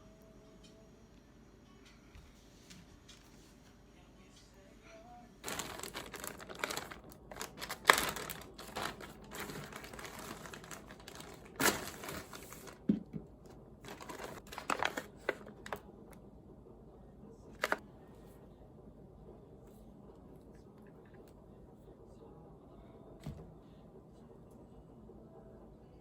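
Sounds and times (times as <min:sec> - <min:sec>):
packaging crinkling and rustling: 0:05.4 - 0:15.8, 0:17.6 - 0:17.8.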